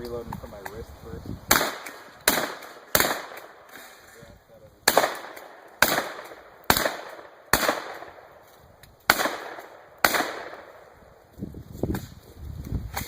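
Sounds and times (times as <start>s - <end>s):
shotgun shots: 1.5s - 3.9s, 4.8s - 8.3s, 9.1s - 10.9s.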